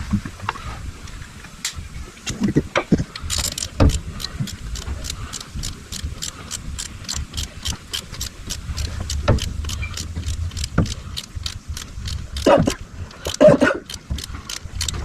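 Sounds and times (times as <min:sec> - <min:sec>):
low steady hum: 0:00.0 - 0:15.0
ratchet wrench clicking: 0:03.1 - 0:15.0.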